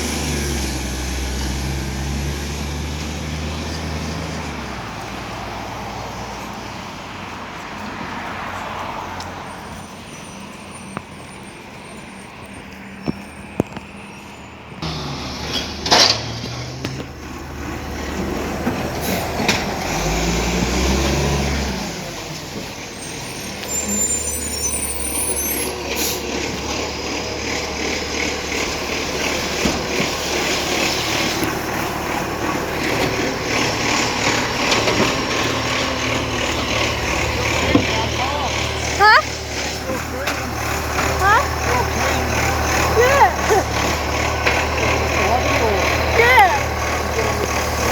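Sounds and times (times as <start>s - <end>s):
garbage truck engine running: 0.0s - 7.2s, 14.8s - 47.9s.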